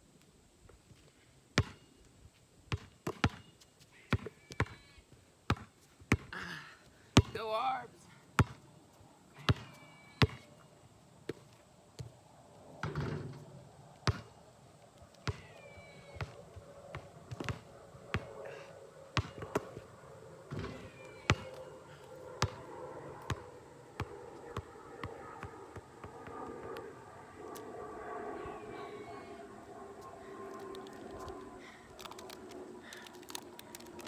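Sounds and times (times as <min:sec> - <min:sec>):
basketball bouncing on hard surface: 0:01.6 - 0:01.8, 0:02.7 - 0:03.4, 0:05.5 - 0:06.3, 0:08.4 - 0:08.6, 0:14.0 - 0:14.3, 0:15.2 - 0:15.5, 0:16.1 - 0:18.3, 0:19.2 - 0:19.9, 0:20.5 - 0:21.6, 0:22.4 - 0:22.6, 0:23.2 - 0:26.7.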